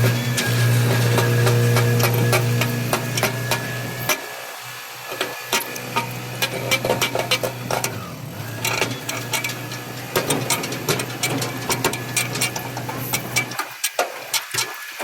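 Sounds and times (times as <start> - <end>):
sharp clicks and metallic knocks: 8.6 - 14.7.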